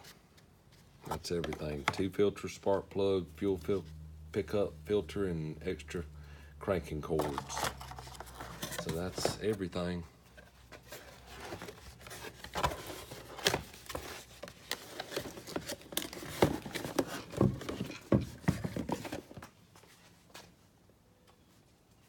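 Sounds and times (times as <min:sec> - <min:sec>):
handling clicks and knocks: 0:07.2 - 0:09.7.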